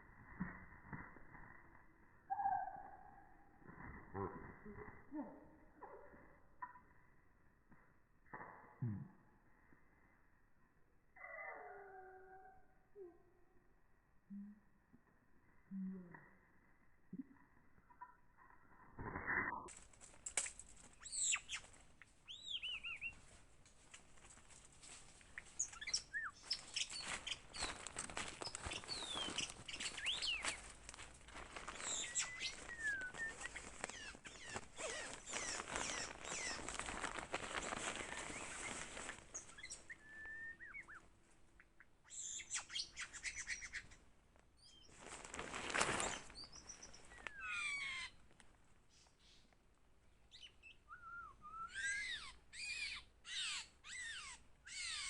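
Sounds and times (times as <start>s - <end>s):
bird singing whistled phrases: 22.3s - 23.1s, 31.8s - 36.6s, 39.6s - 41.0s, 50.4s - 52.9s
rustling noise: 22.9s - 40.0s, 44.9s - 47.4s.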